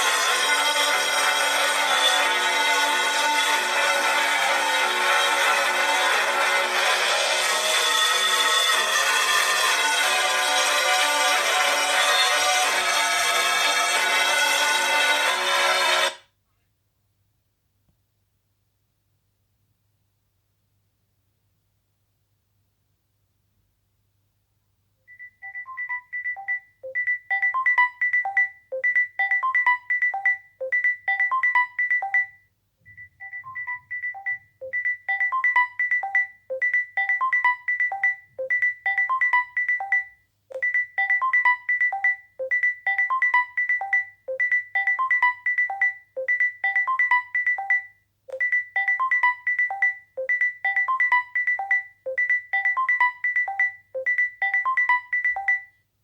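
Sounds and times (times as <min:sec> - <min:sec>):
phone ringtone melody: 0:25.4 - 0:32.4, 0:33.2 - 0:55.7.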